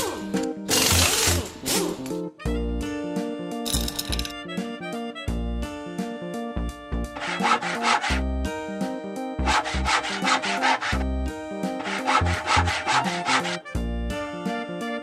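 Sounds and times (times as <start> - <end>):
background music with bass line: 0.0 - 15.0
quick rasping strokes: 7.2 - 8.2, 9.4 - 11.1, 11.7 - 13.6.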